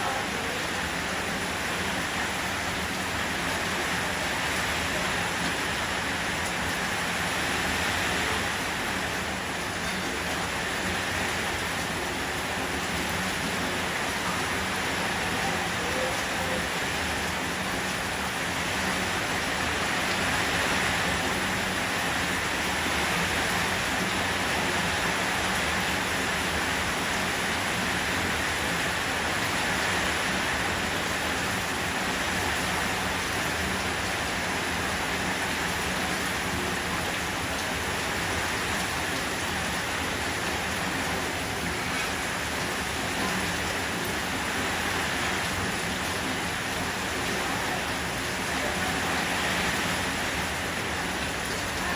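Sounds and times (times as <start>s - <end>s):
rushing stream: 0.0s - 51.9s
steady rain: 0.0s - 51.9s.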